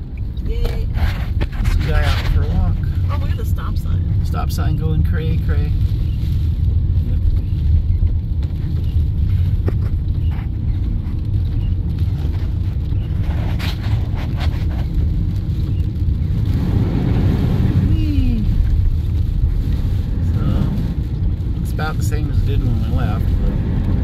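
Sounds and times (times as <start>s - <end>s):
road and wind noise: 0.0s - 24.0s.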